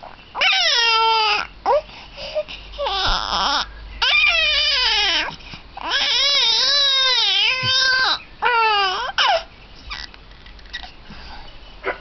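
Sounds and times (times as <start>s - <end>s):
baby crying: 0.4s - 1.8s, 2.8s - 10.1s.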